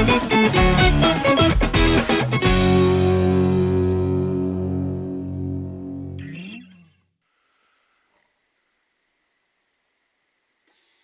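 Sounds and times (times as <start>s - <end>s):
guitar plucked notes and chord: 0.0s - 7.0s.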